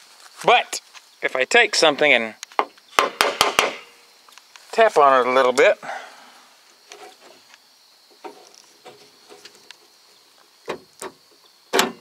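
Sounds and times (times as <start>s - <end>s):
door lock clunks: 10.7s - 12.0s.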